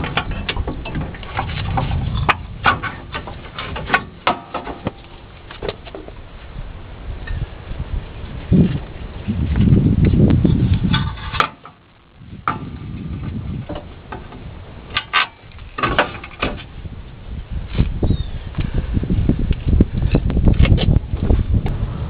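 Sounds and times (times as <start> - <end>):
sharp metallic knocks: 0.0 - 5.8, 10.9 - 12.8
low rumbling scrape: 0.0 - 22.0.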